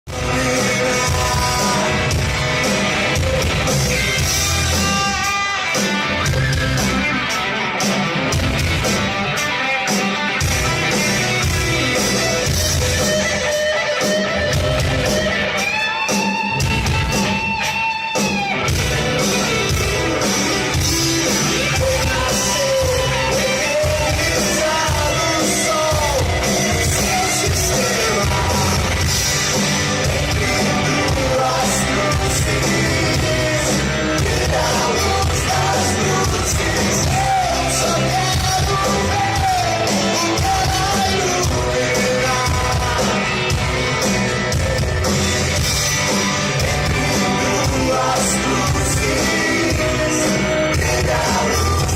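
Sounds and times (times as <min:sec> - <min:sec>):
live rock band: 0:00.0 - 0:51.9
lead singer's voice: 0:00.1 - 0:06.4, 0:18.7 - 0:44.1, 0:46.1 - 0:51.9
steady drum beat: 0:00.1 - 0:51.9.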